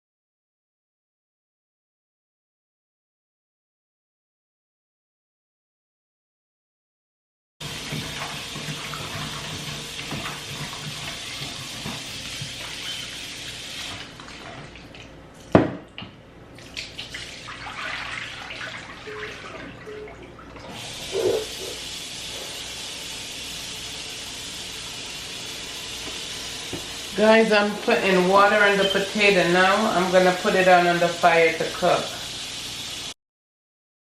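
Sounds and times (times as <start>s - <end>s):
tap running into sink: 7.7s - 13.2s, 26.0s - 27.0s.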